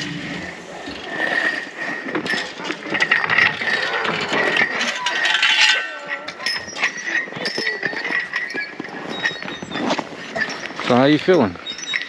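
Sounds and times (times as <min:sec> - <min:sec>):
clicks and rattles: 0:00.0 - 0:12.0
dogs whining and yelping: 0:03.3 - 0:10.8.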